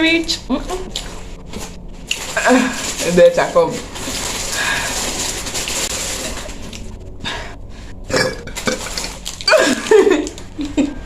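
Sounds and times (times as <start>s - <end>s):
soda fizzing: 2.1s - 6.9s.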